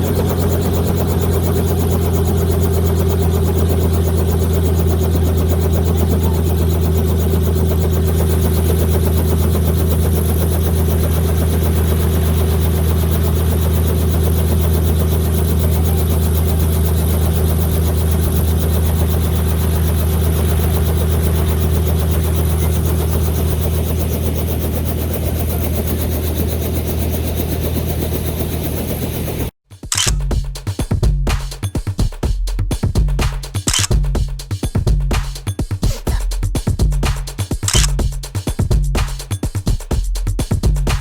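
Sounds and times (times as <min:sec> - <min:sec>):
helicopter engine and rotor: 0:00.0 - 0:30.2, 0:33.7 - 0:34.0, 0:37.7 - 0:37.9.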